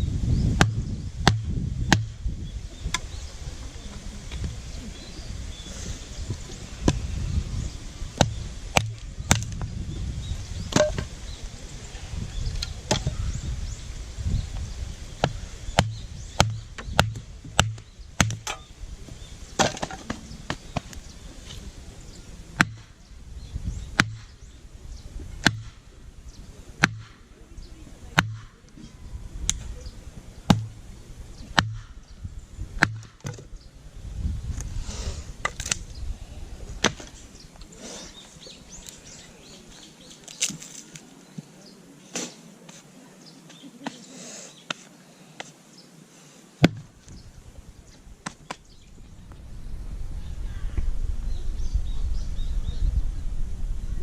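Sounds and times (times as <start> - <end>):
firewood being split: 8.1 - 9.7, 10.7 - 11.2, 15.2 - 18.7, 19.5 - 21.0, 22.6 - 23.0, 25.4 - 25.8, 26.8 - 27.2, 28.1 - 28.6, 30.5 - 30.9, 31.5 - 32.0, 32.8 - 33.4, 35.4 - 35.9, 36.7 - 37.2.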